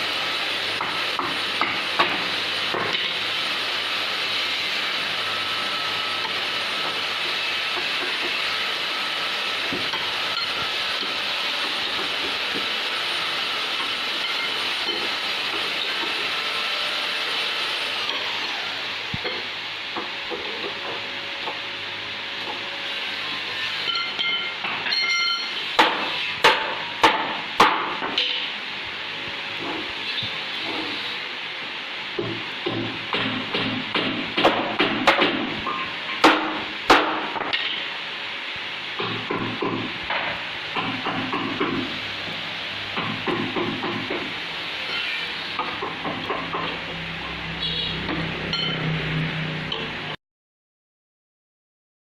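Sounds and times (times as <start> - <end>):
mechanical hiss with faint whine: 37.8 - 45.7.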